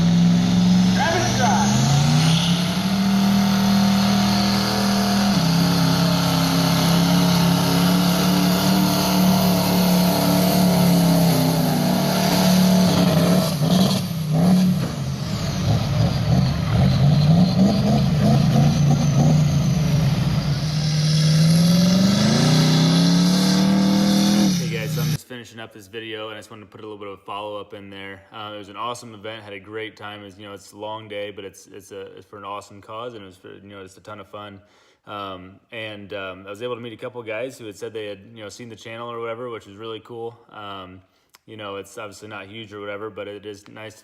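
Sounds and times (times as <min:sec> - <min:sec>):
diesel truck engine revving: 0:00.0 - 0:25.2.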